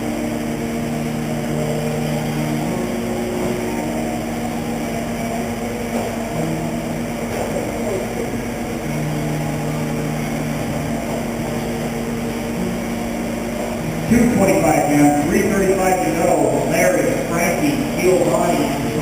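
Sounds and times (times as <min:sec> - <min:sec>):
electric motors whining: 0:00.0 - 0:19.0.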